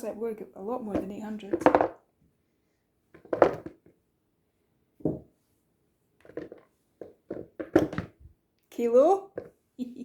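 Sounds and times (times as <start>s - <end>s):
potatoes clunking into a bowl: 0.8s - 2.0s, 3.1s - 3.9s, 6.2s - 8.3s.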